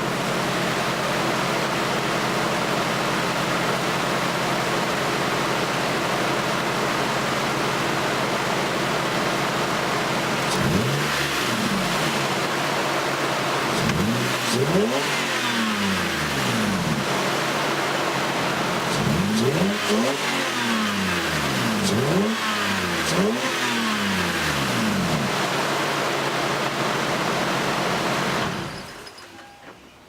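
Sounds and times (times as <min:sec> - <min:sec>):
car engine revving: 0:09.1 - 0:28.7.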